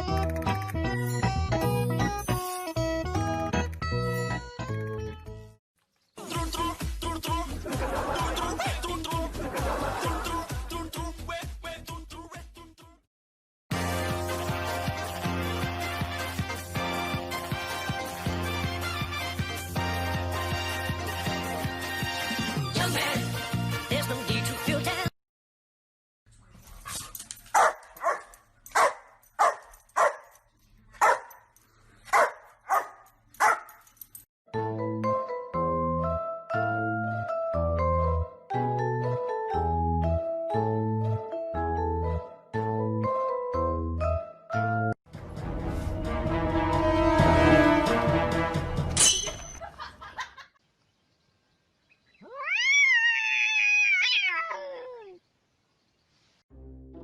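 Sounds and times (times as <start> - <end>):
music with bell-like notes: 1.0 - 5.1
background music: 6.2 - 12.4, 13.7 - 25.1, 34.5 - 49.6, 56.5 - 57.0
dog barking: 27.5 - 30.3, 31.0 - 31.4, 32.1 - 33.8
cat yowling: 52.2 - 55.2.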